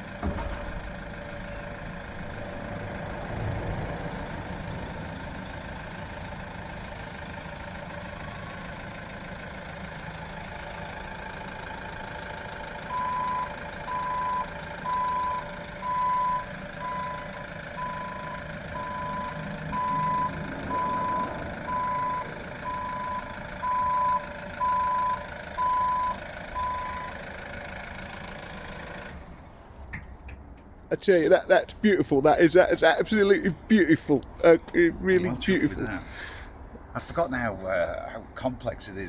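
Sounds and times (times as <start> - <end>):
vehicle engine running: 0.0 - 38.0
reversing alarm beeps: 12.9 - 27.2.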